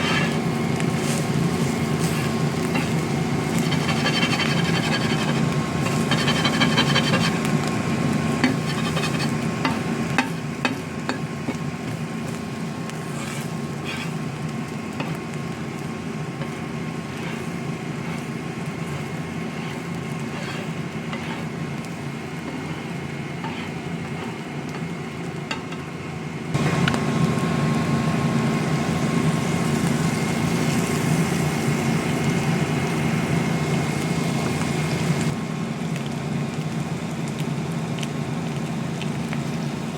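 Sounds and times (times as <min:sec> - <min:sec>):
utensil stirring against pan: 0:00.0 - 0:25.8
steady hum: 0:00.0 - 0:33.7
food sizzling in a frying pan: 0:00.0 - 0:39.9.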